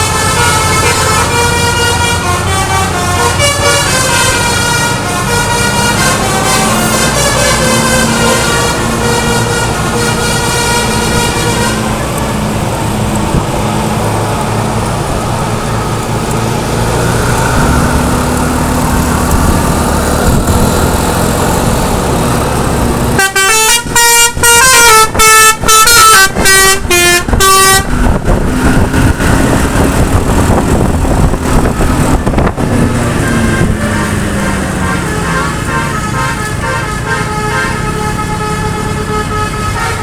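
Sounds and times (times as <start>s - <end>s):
bus musical horn tune: 0.0s - 12.3s, 23.1s - 40.0s
traffic road noise: 0.0s - 40.0s.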